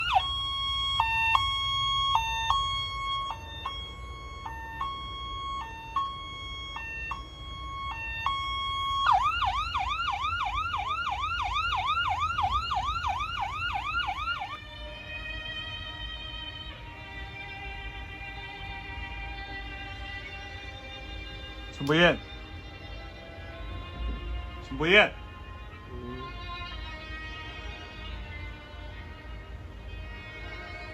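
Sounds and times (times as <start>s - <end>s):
alarm clock siren: 0.0s - 22.7s
music: 0.0s - 30.9s.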